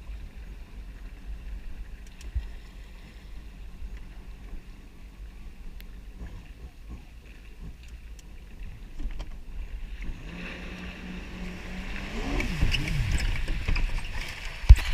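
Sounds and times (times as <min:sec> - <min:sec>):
water and wind rumble: 0:00.0 - 0:14.9
jet ski engine revving: 0:07.7 - 0:14.9.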